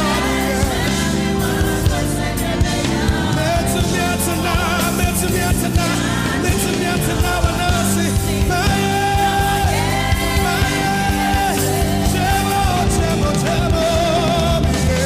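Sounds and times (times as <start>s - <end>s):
gospel band with drums and bass: 0.0s - 15.0s.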